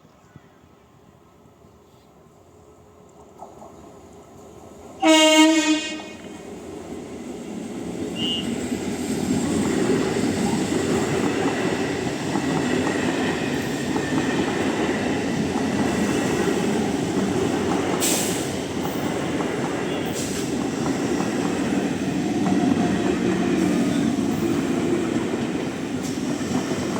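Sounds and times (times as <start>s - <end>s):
train rumble and wheel noise: 0.0s - 26.9s
train horn blast: 5.0s - 6.3s, 8.2s - 8.5s.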